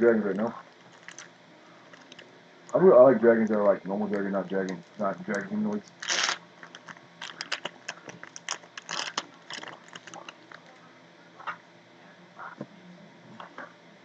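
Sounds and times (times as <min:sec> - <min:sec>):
trading cards rustling and clicking: 0:03.4 - 0:10.7.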